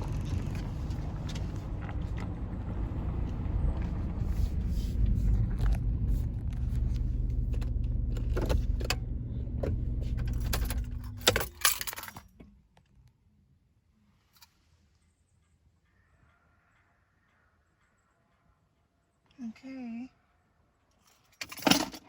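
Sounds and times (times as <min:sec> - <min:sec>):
car engine idling: 0:00.0 - 0:11.5
keys jangling in ignition: 0:06.4 - 0:12.4, 0:21.1 - 0:22.0.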